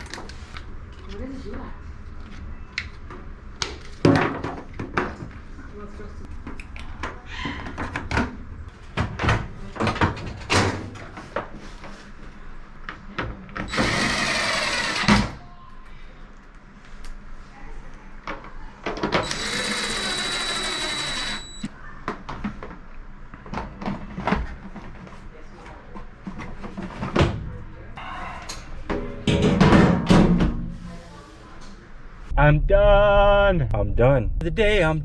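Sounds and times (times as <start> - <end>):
power drill running: 13.7 - 15.3, 19.2 - 21.7.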